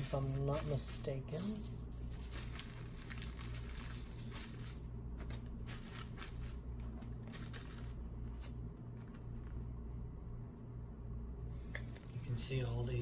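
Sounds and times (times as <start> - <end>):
plastic packaging crinkling: 0.0 - 9.7
steady low hum: 0.0 - 13.0.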